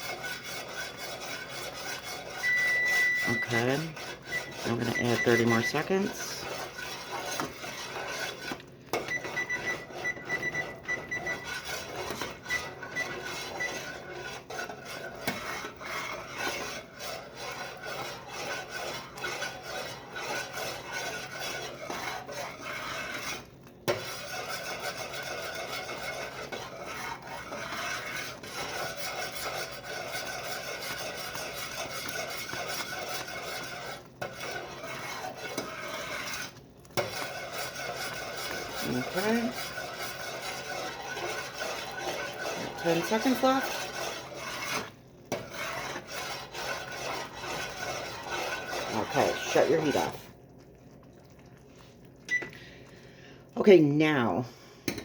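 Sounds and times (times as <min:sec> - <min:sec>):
spoon scraping a pot: 0:00.0 - 0:53.0
kitchen timer beeps: 0:02.4 - 0:06.4, 0:09.0 - 0:11.6, 0:12.5 - 0:13.8, 0:52.3 - 0:52.6.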